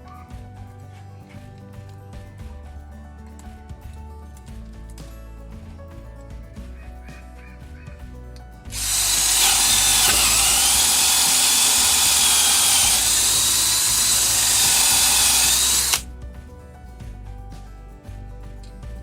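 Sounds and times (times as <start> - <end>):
cordless drill motor whine: 8.7 - 16.1.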